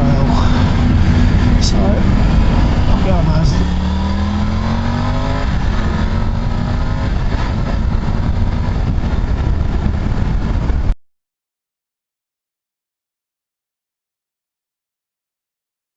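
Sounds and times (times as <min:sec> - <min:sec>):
motorcycle engine accelerating: 0:00.0 - 0:11.0
wind and road noise: 0:00.0 - 0:11.0.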